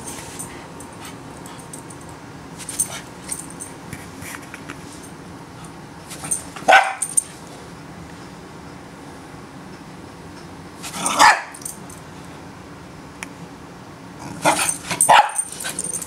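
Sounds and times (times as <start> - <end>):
puppy barking: 6.6 - 7.1, 11.0 - 11.6, 14.4 - 15.5.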